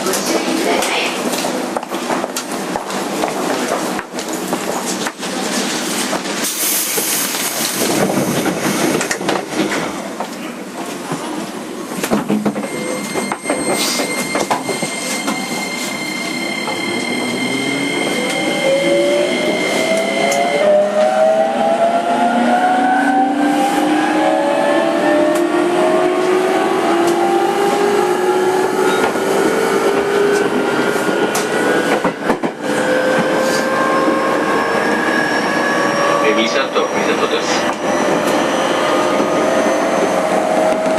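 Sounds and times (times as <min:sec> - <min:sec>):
steady high tone: 0:12.6 - 0:24.9.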